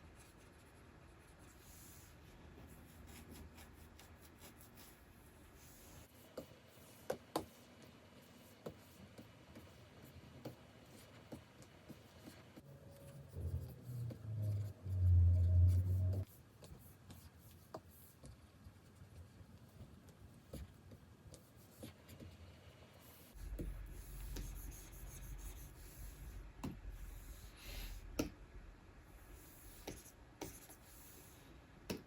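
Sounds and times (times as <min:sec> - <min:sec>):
soft low hum: 0:12.6 - 0:16.3, 0:23.3 - 0:31.6
low rumble: 0:13.1 - 0:16.2
pen stroking on drawing screen: 0:23.2 - 0:28.0.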